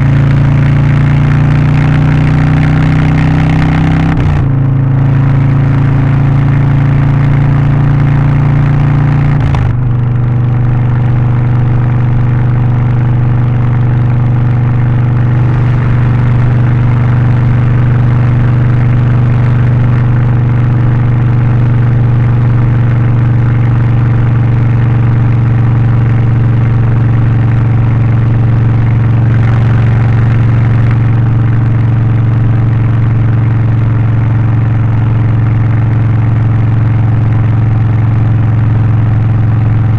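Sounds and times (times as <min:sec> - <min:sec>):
motorcycle engine running loud: 0:00.0 - 0:39.9.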